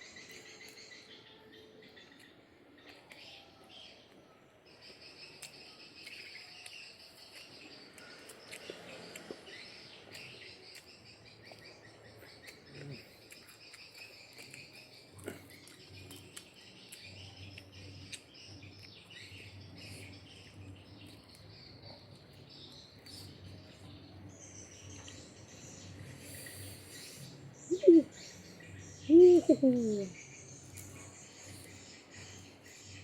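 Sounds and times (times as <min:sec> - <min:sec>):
birds calling: 0:24.3 - 0:33.0.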